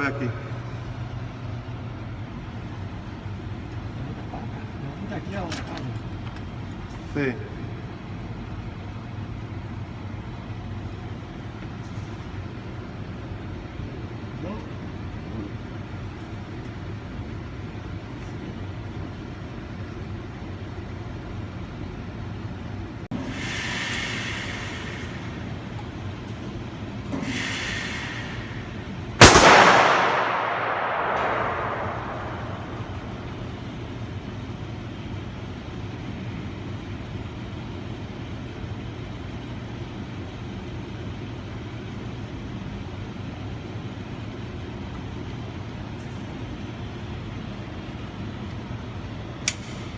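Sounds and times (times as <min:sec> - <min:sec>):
steady low hum: 0:00.0 - 0:49.9
swells of noise: 0:27.7 - 0:33.7
loud gunshot with echo: 0:29.2 - 0:33.5.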